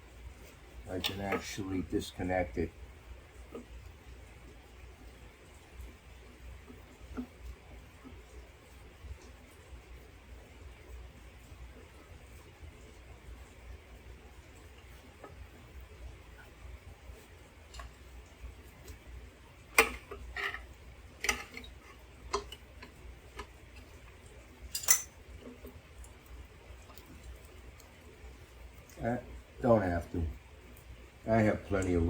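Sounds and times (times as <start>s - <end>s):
faint steady hiss: 0.0s - 32.0s
tools and parts clicking: 19.8s - 23.5s, 24.7s - 25.1s.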